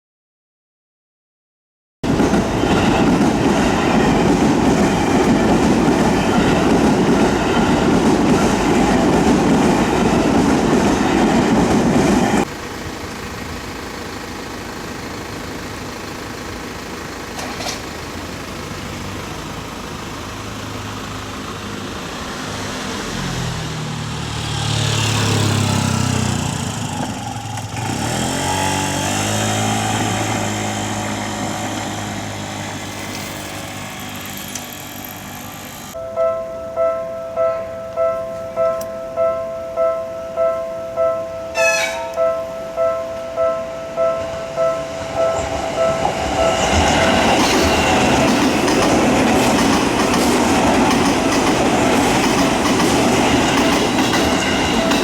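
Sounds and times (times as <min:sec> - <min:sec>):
street noise: 0:02.0 - 0:55.0
train rumbling over crossing: 0:02.0 - 0:55.0
vehicle engine rising in pitch: 0:18.3 - 0:36.0.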